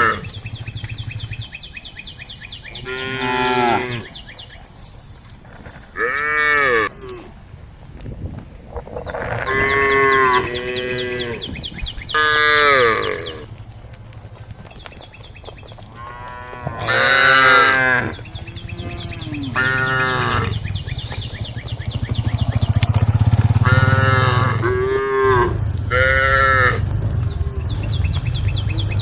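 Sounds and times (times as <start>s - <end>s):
cows mooing: 0.0s - 0.3s, 2.8s - 4.2s, 6.0s - 7.2s, 9.1s - 13.5s, 15.9s - 20.7s, 23.6s - 26.8s.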